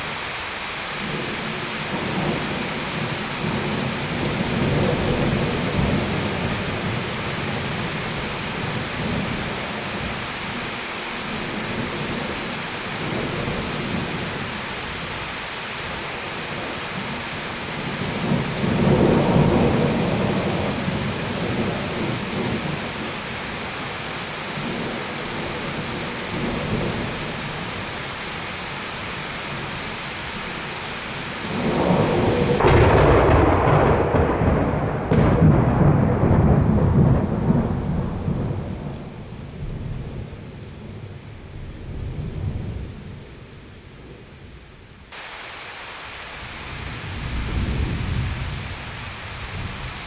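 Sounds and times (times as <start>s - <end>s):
steady rain: 0.0s - 50.0s
rolling thunder: 1.9s - 10.6s, 17.0s - 23.0s, 31.4s - 43.3s, 46.6s - 50.0s.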